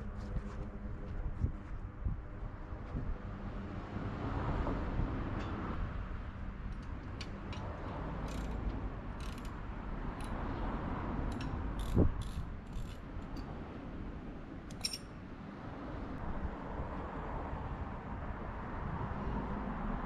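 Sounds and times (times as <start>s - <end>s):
metal tool clicks and clinks: 6.7s - 9.6s, 14.7s - 15.2s.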